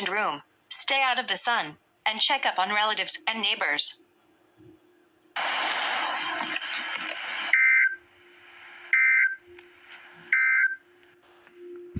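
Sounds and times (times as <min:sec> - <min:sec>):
two-tone data bursts: 0:01.4 - 0:11.9
loud hiss-like noise: 0:05.4 - 0:07.6.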